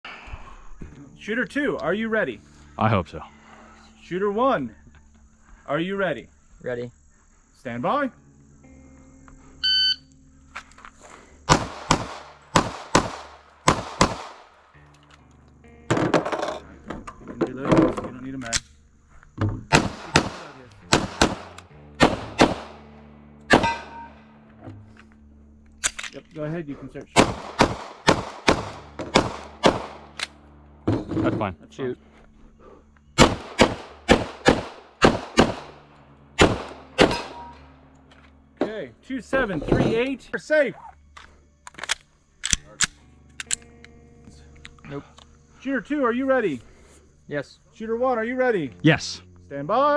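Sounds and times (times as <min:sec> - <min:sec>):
shot timer beep: 0:09.6 - 0:10.1
pistol shots: 0:11.5 - 0:14.6, 0:19.7 - 0:22.8, 0:23.5 - 0:24.2, 0:27.2 - 0:30.4, 0:33.2 - 0:35.8, 0:36.4 - 0:37.6.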